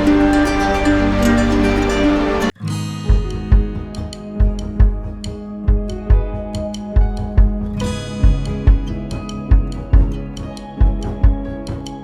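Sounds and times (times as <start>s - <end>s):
plucked guitar-like tune: 0.0s - 4.9s.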